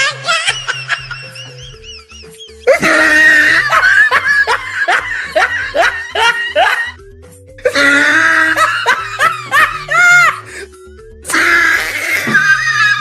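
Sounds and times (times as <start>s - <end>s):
background music: 0.0s - 13.0s
laughing sound effect: 0.1s - 7.0s.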